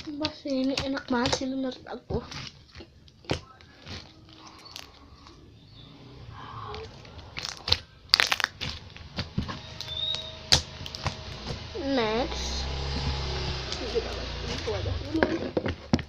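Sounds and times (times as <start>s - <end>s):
slime crackling and popping: 0.0s - 5.4s, 7.0s - 11.7s.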